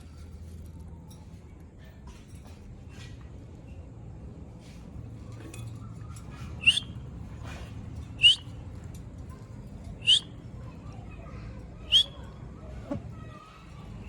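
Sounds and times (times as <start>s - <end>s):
parrot calling: 6.6s - 7.0s, 8.2s - 8.5s, 10.0s - 10.3s, 11.9s - 12.2s.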